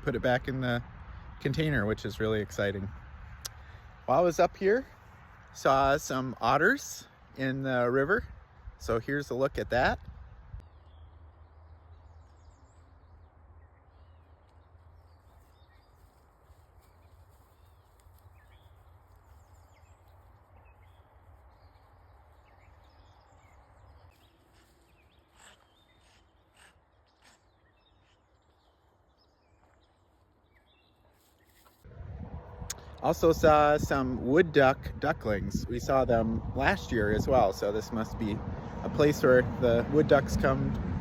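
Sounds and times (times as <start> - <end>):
low rumble: 31.9 - 41.0
low steady rush: 31.9 - 41.0.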